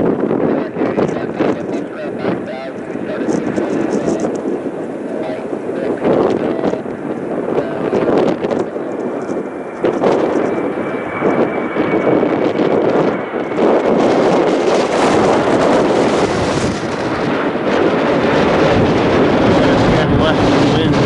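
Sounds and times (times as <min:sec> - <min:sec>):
jet engine roar: 0:00.0 - 0:21.0
thin steady whine: 0:00.0 - 0:21.0
wind buffeting microphone: 0:00.0 - 0:21.0.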